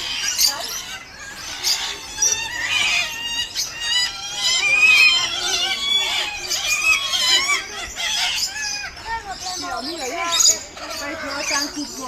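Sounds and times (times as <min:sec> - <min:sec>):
birds squawking: 0:00.0 - 0:12.0.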